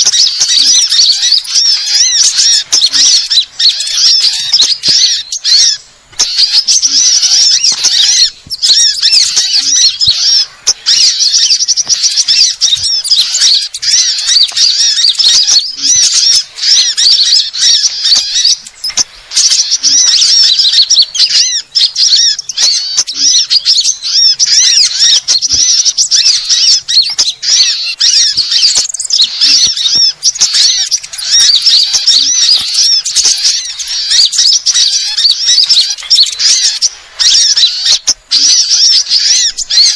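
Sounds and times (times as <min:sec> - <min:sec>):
songbirds chattering and chirping: 0:00.0 - 0:39.9.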